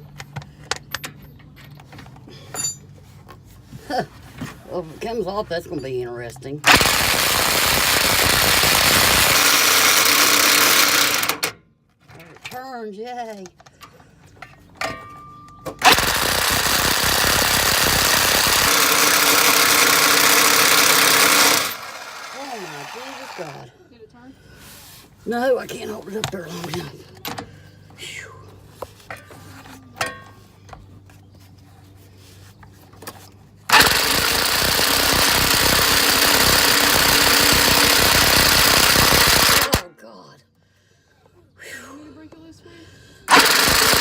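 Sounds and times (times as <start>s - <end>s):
impact wrench hammering: 6.6s - 11.6s, 15.8s - 23.6s, 33.7s - 39.8s, 43.3s - 44.0s.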